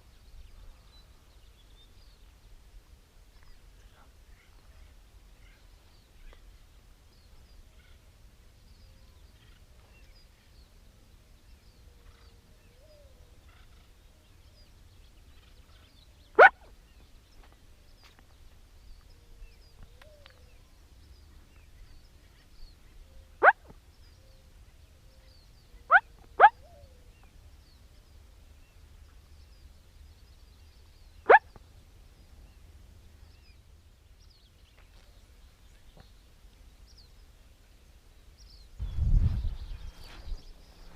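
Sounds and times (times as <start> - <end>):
distant bird calls: 3.4 - 40.9
turkey calls: 16.4 - 16.7, 23.4 - 23.7.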